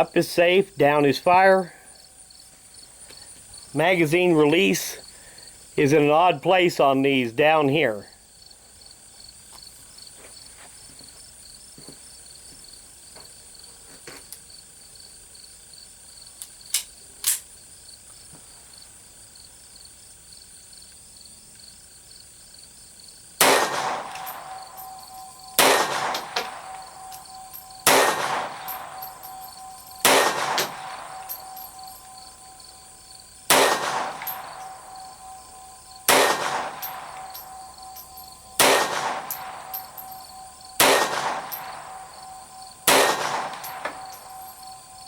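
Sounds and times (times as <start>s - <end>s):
insects chirring: 0.0s - 45.0s
pistol shots: 23.4s - 32.9s, 33.5s - 44.5s
metallic ring: 23.9s - 45.0s.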